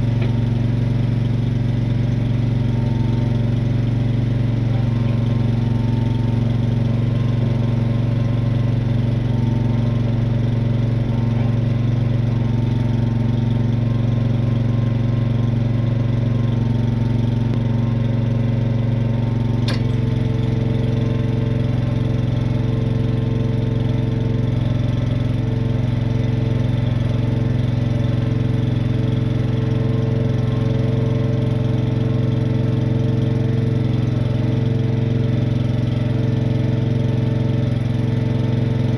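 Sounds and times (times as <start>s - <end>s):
truck engine idling: 0.0s - 38.9s
sharp click: 19.6s - 20.1s.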